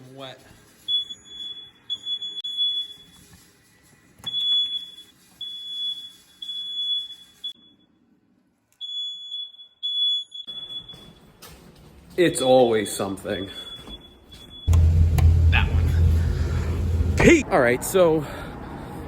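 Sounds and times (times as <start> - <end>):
electronic alarm beeping: 0.9 - 3.2, 12.8 - 16.1
low background rumble: 14.7 - 17.4.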